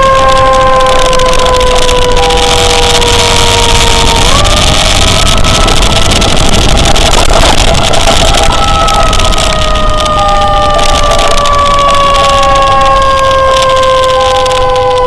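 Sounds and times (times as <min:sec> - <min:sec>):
road and wind noise from vehicle: 0:00.0 - 0:15.0
two-tone emergency siren: 0:00.0 - 0:15.0.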